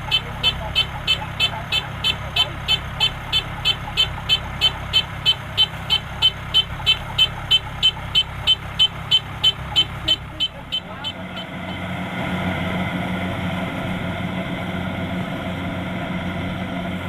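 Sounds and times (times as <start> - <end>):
rapid electronic beeping: 0.0 - 11.8
harvester engine humming: 0.0 - 17.0.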